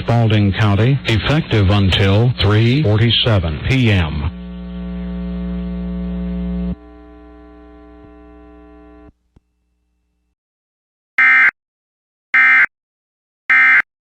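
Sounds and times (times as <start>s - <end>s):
buzzing hum: 3.6s - 10.4s.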